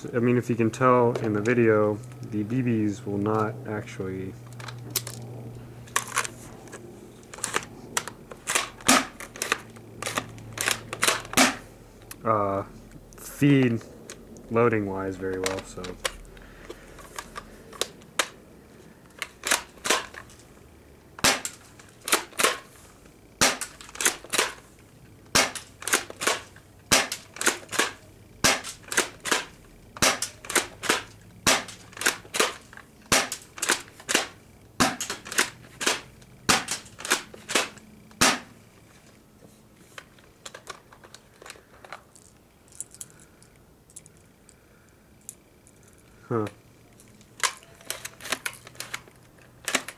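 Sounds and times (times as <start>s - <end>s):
airsoft shotgun firing and pumping: 8.4s - 11.6s, 21.2s - 22.6s, 23.4s - 24.6s, 25.3s - 38.5s
faint handling clicks: 15.2s - 18.4s.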